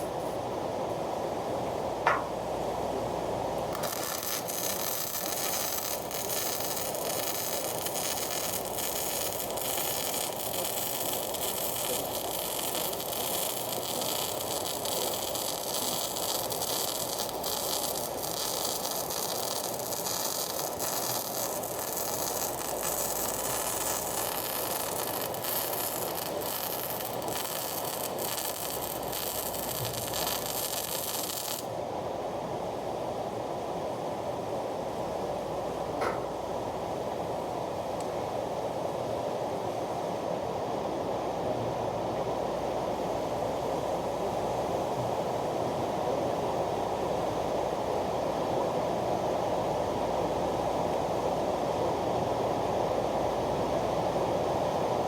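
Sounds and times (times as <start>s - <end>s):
welding arc crackling hiss: 3.6s - 31.8s.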